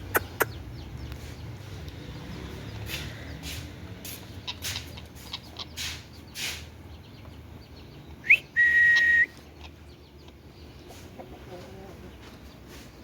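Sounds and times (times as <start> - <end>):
parrot whistling: 8.2 - 9.3.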